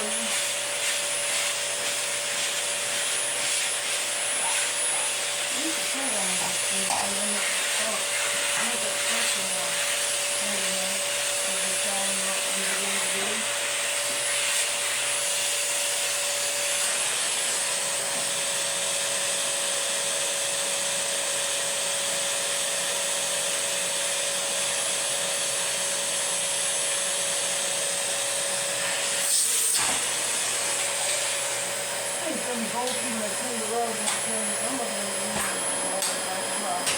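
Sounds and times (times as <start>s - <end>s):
vacuum cleaner running: 0.0s - 36.9s.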